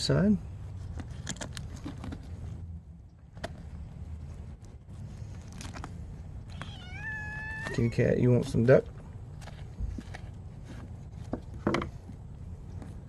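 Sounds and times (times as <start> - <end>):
low steady rumble: 0.0 - 13.0
skin peeling crackles: 4.6 - 6.8.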